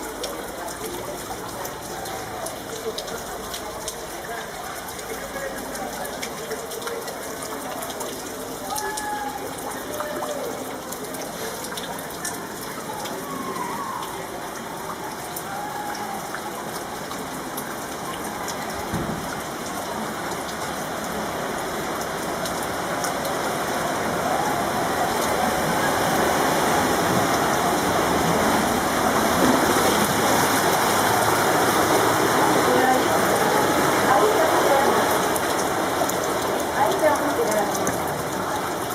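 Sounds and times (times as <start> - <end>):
rain falling: 0.0 - 38.9.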